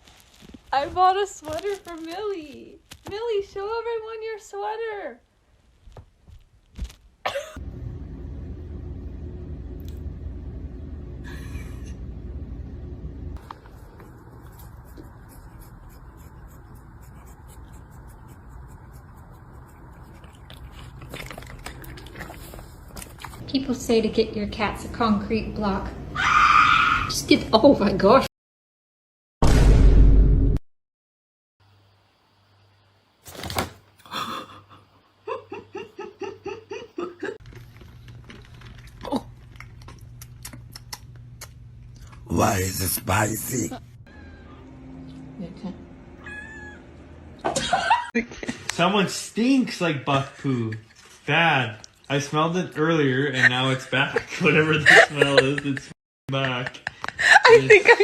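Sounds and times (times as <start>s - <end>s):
person laughing: 7.3s - 7.6s, 11.2s - 12.0s, 34.1s - 37.4s, 47.5s - 48.7s, 53.3s - 58.0s
steady low hum: 7.3s - 26.2s, 37.4s - 50.5s
rapid light scratching: 13.4s - 21.5s.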